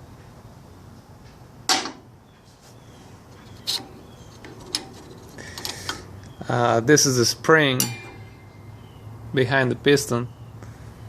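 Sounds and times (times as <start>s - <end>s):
sharp metal knocks: 7.7s - 9.0s.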